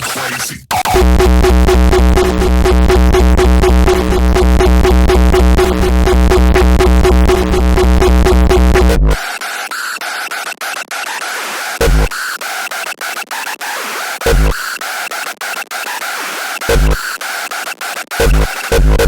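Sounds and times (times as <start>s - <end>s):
electronic dance music: 0.0s - 19.0s.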